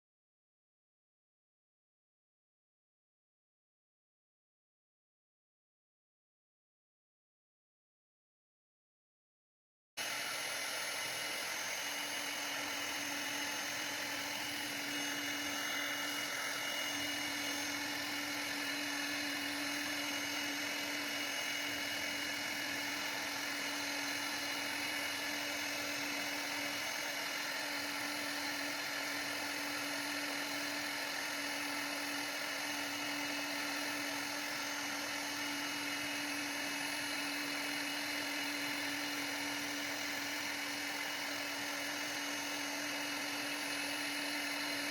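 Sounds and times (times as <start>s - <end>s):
router spindle whine: 10.0s - 44.9s.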